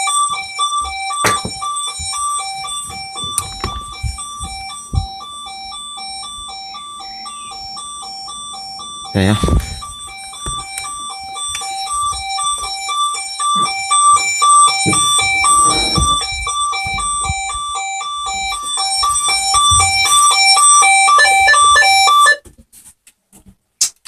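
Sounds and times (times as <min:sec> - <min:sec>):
burglar alarm two-tone warble: 0:00.0 - 0:22.4.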